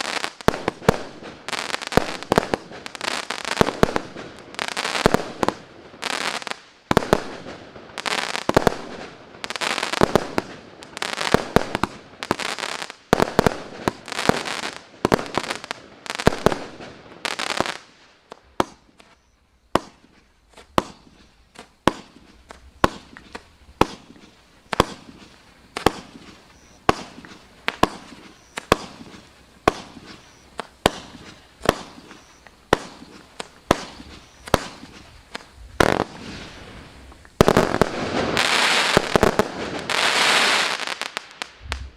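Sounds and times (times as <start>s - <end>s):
firework bangs: 0.0s - 41.9s
firework bursts crackling: 0.0s - 41.9s.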